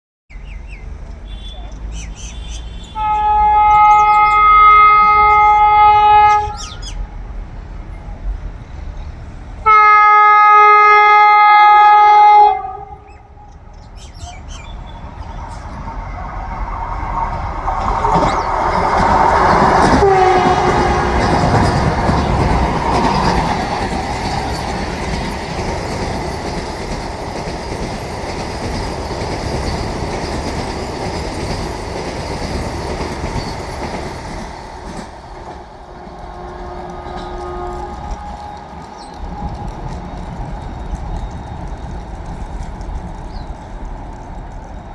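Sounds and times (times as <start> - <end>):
train rushing past: 0.4 - 44.9
train horn blasts: 1.2 - 6.8, 9.6 - 13.3, 18.7 - 23.4, 35.6 - 39.7
clickety-clack of coaches: 13.5 - 44.9.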